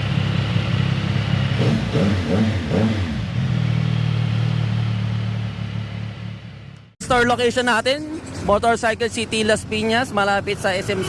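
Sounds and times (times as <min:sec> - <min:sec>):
motorcycle engine revving: 0:00.0 - 0:07.0.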